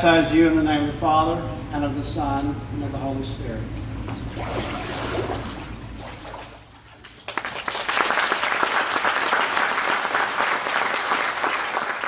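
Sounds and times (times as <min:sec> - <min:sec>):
crowd applauding: 0:07.0 - 0:12.0.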